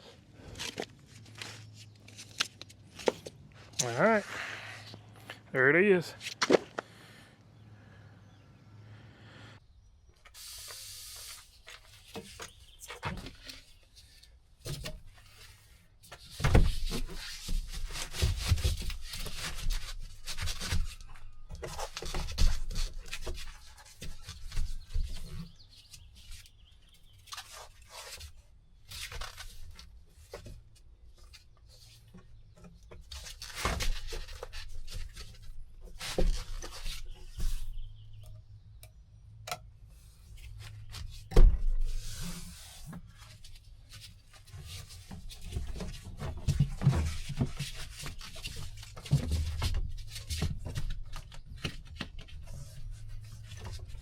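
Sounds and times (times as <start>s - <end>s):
rubber mat rubbing and scraping: 14.9s - 26.5s, 40.0s - 54.0s.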